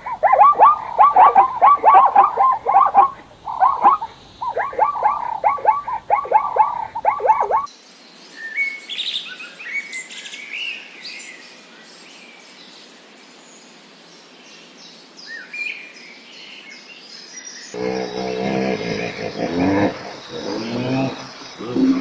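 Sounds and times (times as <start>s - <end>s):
low pitched animal sound: 0.0s - 7.7s, 17.8s - 22.0s
small birds chirping: 0.0s - 7.7s, 17.7s - 22.0s
steady background hiss: 0.0s - 22.0s.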